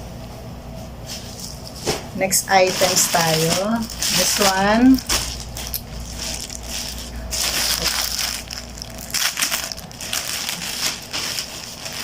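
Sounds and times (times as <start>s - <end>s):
packaging crinkling and rustling: 2.5s - 12.0s.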